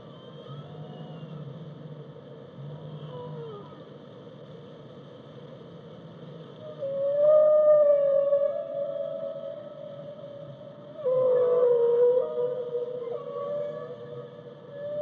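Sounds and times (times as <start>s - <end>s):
whale calls: 6.6s - 15.0s.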